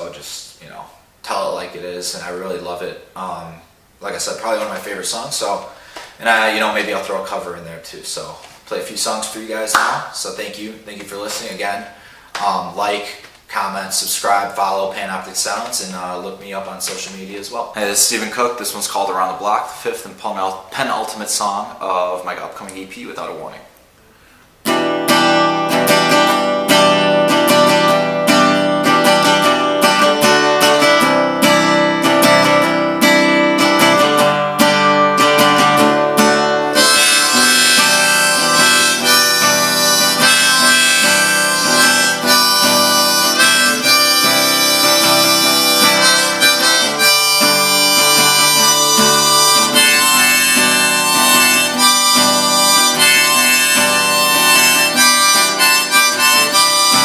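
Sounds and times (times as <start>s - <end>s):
acoustic guitar strumming: 24.6s - 57.0s
harmonica melody: 24.7s - 57.0s.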